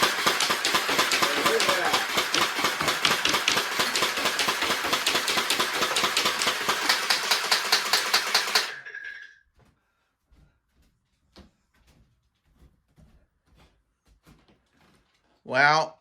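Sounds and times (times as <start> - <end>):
toy dart blaster firing rapidly: 0.0 - 8.9.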